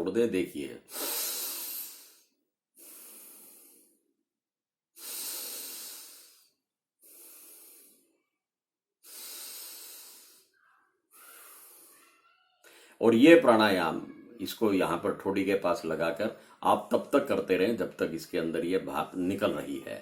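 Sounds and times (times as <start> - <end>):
forceful breaths through nose: 0.9 - 4.0, 5.0 - 8.1, 9.0 - 12.0.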